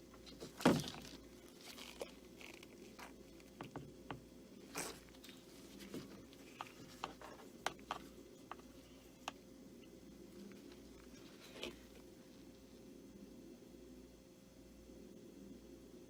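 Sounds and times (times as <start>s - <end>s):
paintbrush tapping and scraping: 0.2s - 9.4s.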